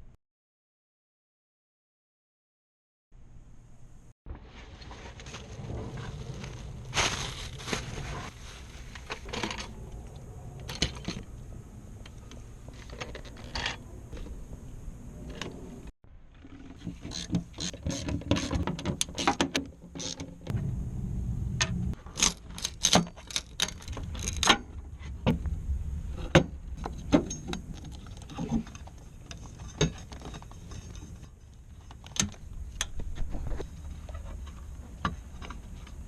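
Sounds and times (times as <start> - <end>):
faint low rumble: 3.2 - 16.4, 20.4 - 22.1, 23.4 - 29.7
metallic clicks and clinks: 22.1 - 24.6.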